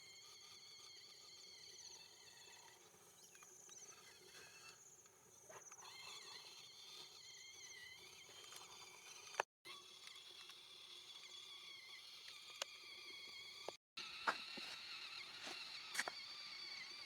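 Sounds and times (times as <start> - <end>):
insects trilling: 0.0 - 9.4.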